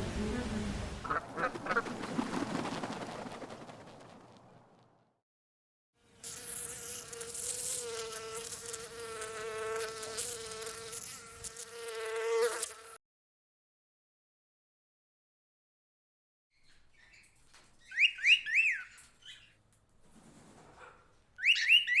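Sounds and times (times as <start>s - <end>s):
flying insect buzzing: 6.0s - 13.0s.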